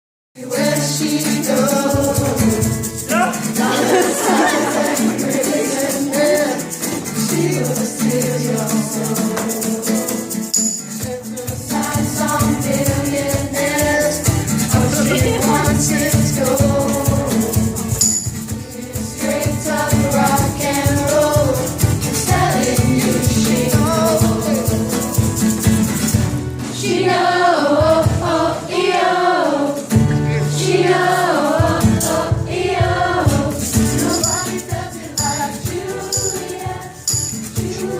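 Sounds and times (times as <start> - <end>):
lead vocal singing: 0.4 - 25.6, 26.7 - 37.9
guitar: 0.4 - 37.9
shaker beat: 0.4 - 37.9
bass and drums: 11.2 - 27.1, 27.8 - 28.6, 29.9 - 37.9.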